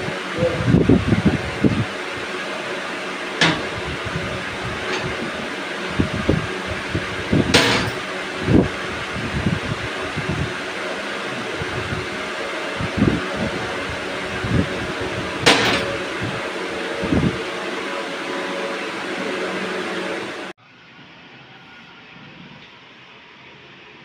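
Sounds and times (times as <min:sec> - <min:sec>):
steady fan noise: 0:00.0 - 0:24.0
sharp knocks: 0:07.5 - 0:08.0.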